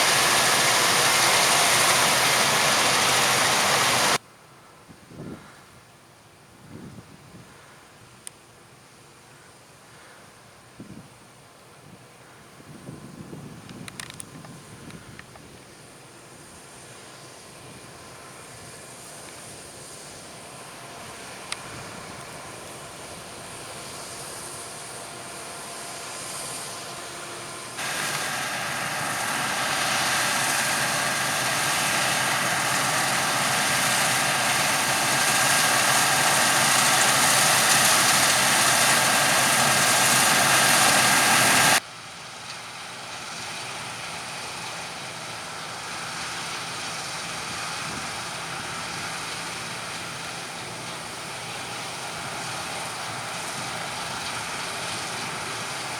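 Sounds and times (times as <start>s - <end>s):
harvest machinery running: 0.0s - 4.2s, 16.4s - 55.9s.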